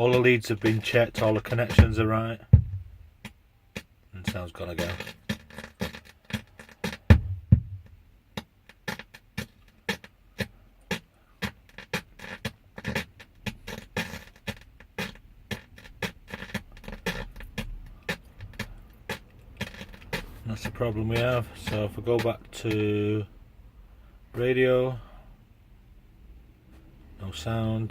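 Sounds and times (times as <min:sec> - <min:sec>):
music with sharp regular beat: 0:00.0 - 0:23.0
car stereo popping: 0:00.0 - 0:23.3.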